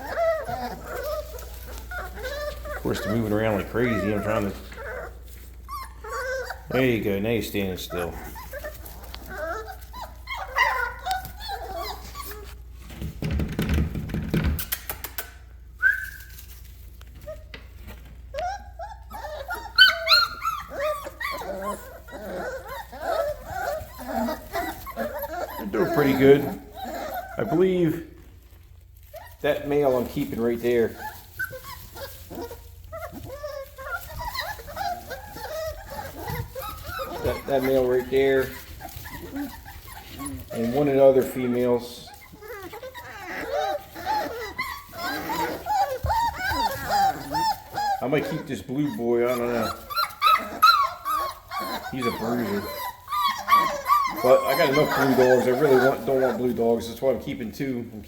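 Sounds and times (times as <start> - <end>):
puppies whining and yelping: 0.0 - 13.4, 14.3 - 58.0
low scuffling and bumps: 28.4 - 43.0.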